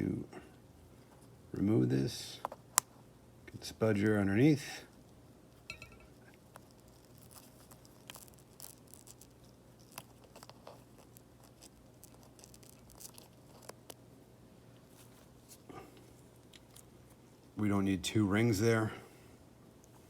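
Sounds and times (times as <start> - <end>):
low steady hum: 0.0 - 20.0
small clicks and scraping of prying: 5.7 - 14.0.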